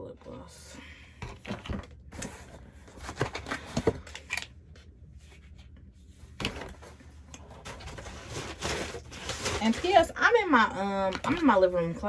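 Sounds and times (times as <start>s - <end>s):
packaging rustling: 1.2s - 4.5s, 6.3s - 12.0s.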